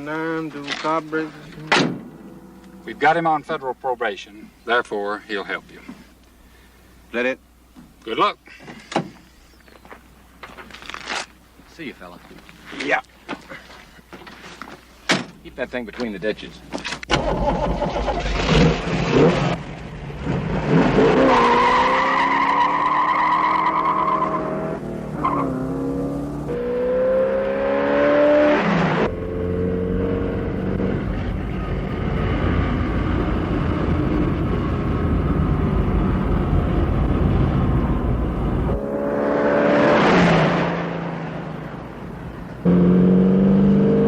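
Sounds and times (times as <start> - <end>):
car engine accelerating hard: 18.5 - 44.0.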